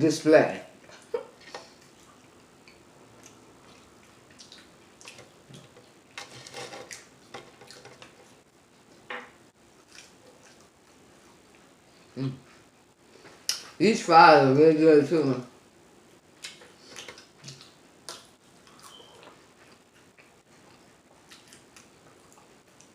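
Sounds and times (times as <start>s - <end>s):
person chewing food: 1.5s - 9.0s, 9.7s - 13.7s, 16.4s - 22.9s.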